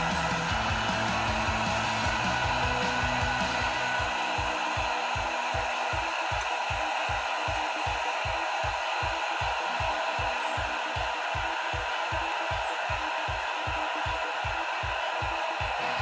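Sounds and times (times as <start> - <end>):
background music with bass: 0.0 - 4.2
low thumping beat: 0.0 - 15.9
electric kettle hissing: 0.0 - 16.0.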